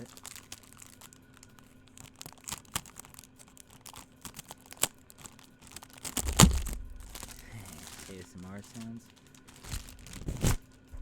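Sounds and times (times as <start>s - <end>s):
plastic packaging crinkling: 0.0s - 11.0s
loud thump: 6.2s - 7.7s.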